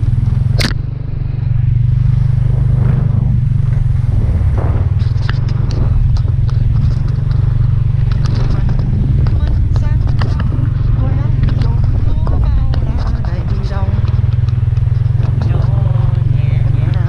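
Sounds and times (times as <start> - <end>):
engine droning: 0.0 - 17.0.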